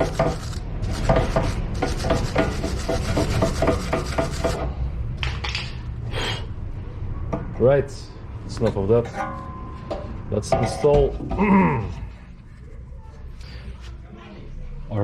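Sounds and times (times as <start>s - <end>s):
hand scrubbing metal surface: 1.0s - 4.6s.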